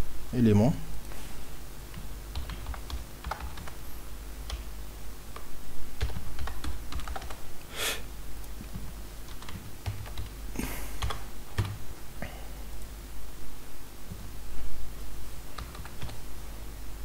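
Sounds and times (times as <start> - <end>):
steady low hum: 0.0 - 17.0
computer keyboard typing: 1.9 - 3.8, 4.4 - 4.7, 5.3 - 7.4, 8.6 - 10.4, 11.0 - 11.8, 15.5 - 16.2.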